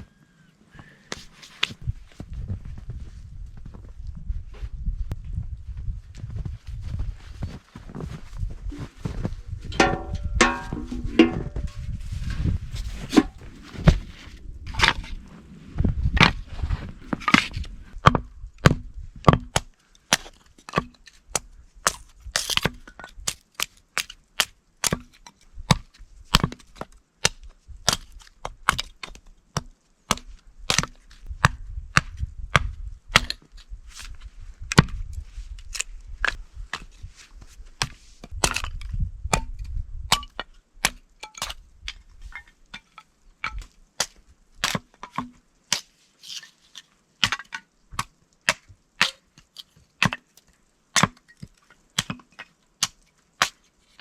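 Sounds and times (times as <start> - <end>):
low rumble: 8.5 - 18.6
sharp cracks and snaps: 35.6 - 36.4.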